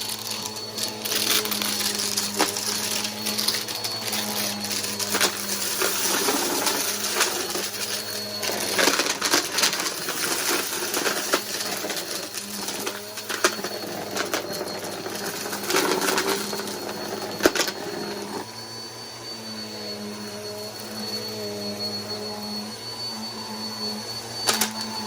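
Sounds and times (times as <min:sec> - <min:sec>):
debris clicking in vacuum: 0:00.0 - 0:18.4
vacuum cleaner running: 0:00.0 - 0:25.0.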